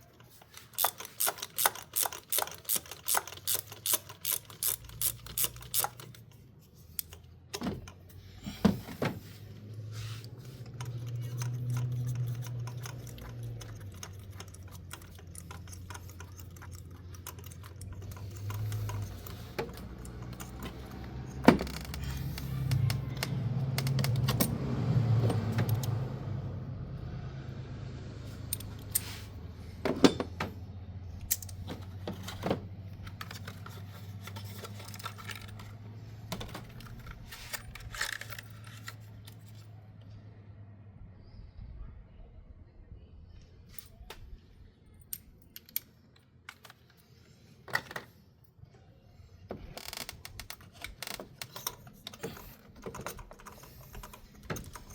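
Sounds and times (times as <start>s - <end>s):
metal tools clinking: 10.5s - 21.4s, 33.1s - 35.8s.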